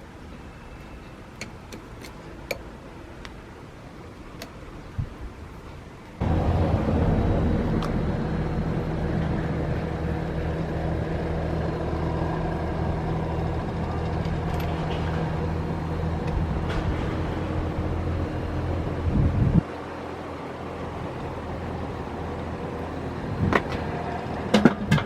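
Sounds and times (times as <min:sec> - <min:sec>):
small engine idling: 0:06.2 - 0:19.6, 0:20.6 - 0:25.0.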